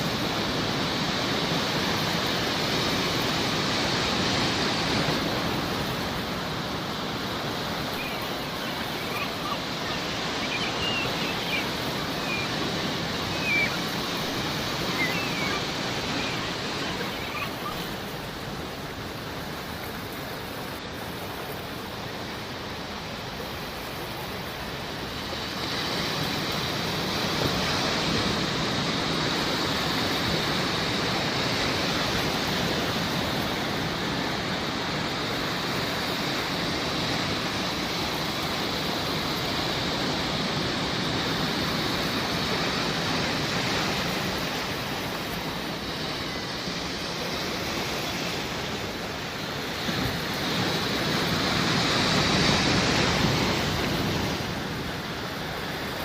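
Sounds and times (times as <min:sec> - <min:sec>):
sea waves washing: 0:00.0 - 0:56.0
seagull calls: 0:07.4 - 0:18.3.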